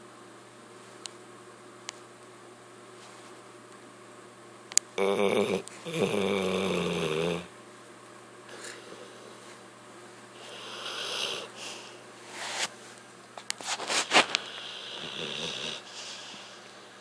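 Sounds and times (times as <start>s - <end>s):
dog breathing noisily in sleep: 10.4s - 12.7s, 13.9s - 16.7s
rattling snore: 14.4s - 15.8s.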